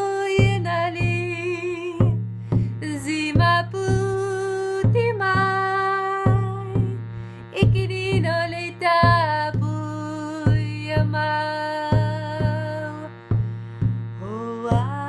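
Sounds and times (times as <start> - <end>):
woman singing wordless notes: 0.0 - 13.3, 14.1 - 15.0
shruti box drone: 0.0 - 15.0
drum struck slowly: 0.4 - 7.0.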